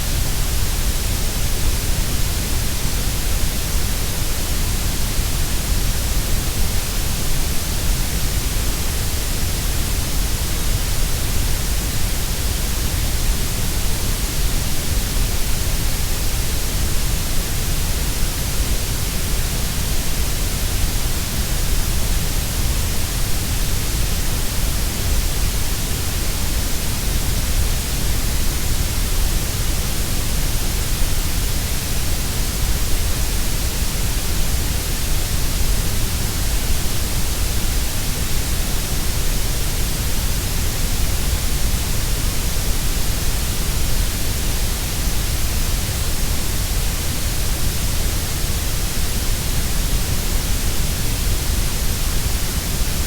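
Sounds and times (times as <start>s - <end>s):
steady grey noise hiss: 0.0s - 53.0s.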